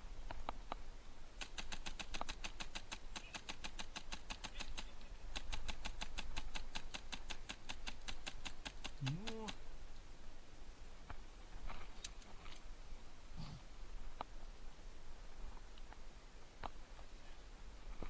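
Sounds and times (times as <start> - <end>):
rapid even clicking: 1.4 - 9.6.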